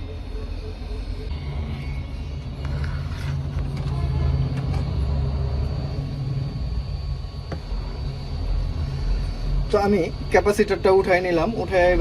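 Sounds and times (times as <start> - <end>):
hot air station blowing: 0.1 - 12.0.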